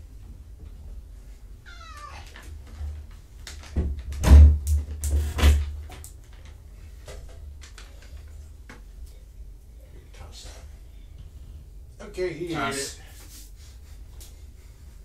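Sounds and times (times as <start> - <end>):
kitten meowing: 1.6 - 2.3.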